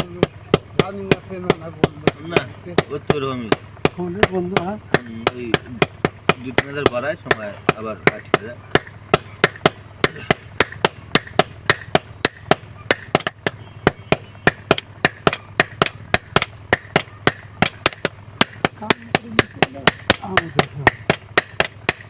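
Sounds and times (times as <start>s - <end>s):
hammer striking metal on anvil: 0.0s - 22.0s.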